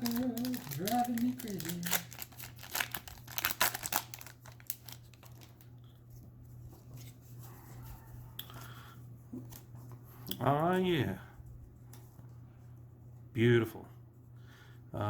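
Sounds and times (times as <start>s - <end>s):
foil wrapper crinkling and tearing: 0.0s - 5.8s
steady low hum: 0.0s - 15.0s.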